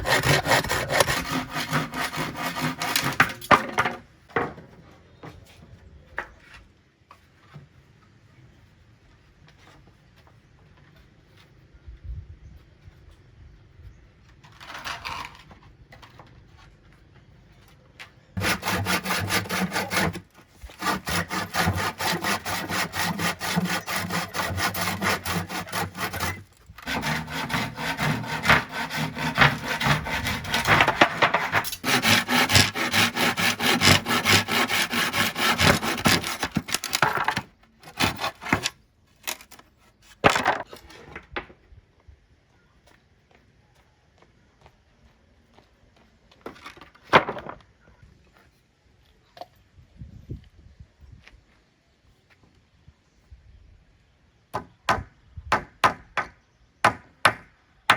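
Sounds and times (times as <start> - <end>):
hand saw cutting wood: 0.0 - 3.7, 18.4 - 38.7.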